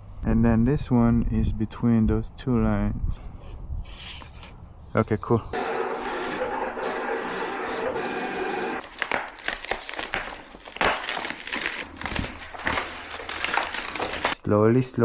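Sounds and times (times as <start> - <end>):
vinyl decal paper crinkling: 6.3 - 14.4.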